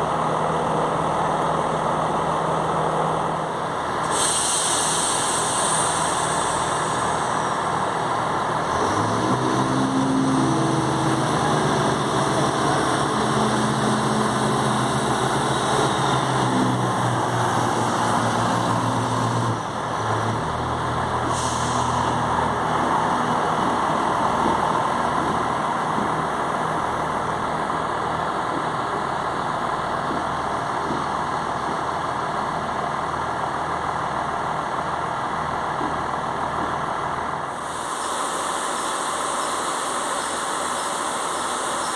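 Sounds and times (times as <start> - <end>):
diesel train engines running: 0.0 - 41.9
short hiss: 4.0 - 7.6.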